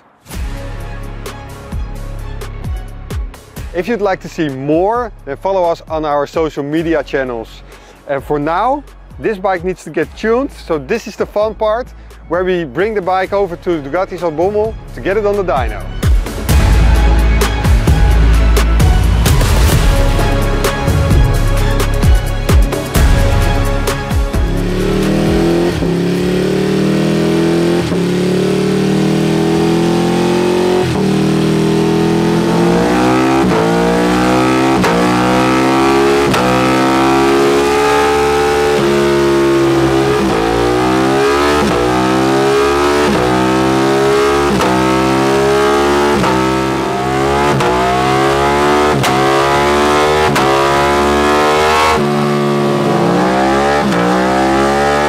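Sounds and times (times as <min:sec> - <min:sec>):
motorcycle engine revving hard: 0:24.4 - 0:55.0.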